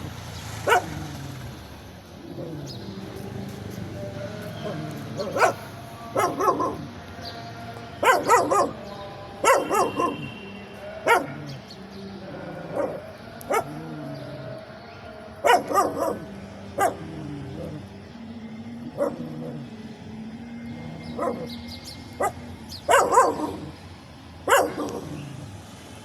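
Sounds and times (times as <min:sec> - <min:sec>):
dog barking: 0:00.6 - 0:01.1, 0:04.6 - 0:06.9, 0:08.0 - 0:10.4, 0:11.0 - 0:11.6, 0:12.5 - 0:13.9, 0:15.4 - 0:17.6, 0:18.9 - 0:19.6, 0:21.0 - 0:21.6, 0:22.2 - 0:23.8, 0:24.5 - 0:25.3.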